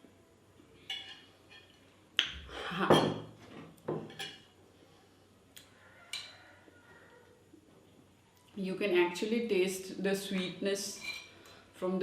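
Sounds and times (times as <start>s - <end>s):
dishes and utensil clinking: 0.9s - 3.3s, 3.9s - 4.6s, 10.3s - 11.4s.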